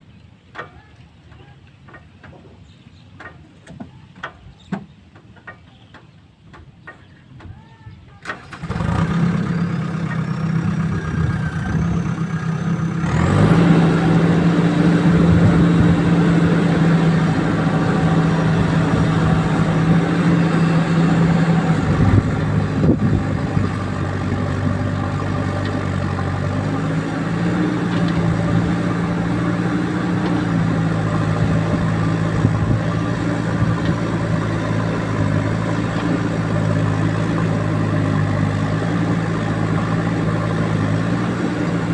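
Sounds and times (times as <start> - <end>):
diesel engine running: 8.2 - 41.9.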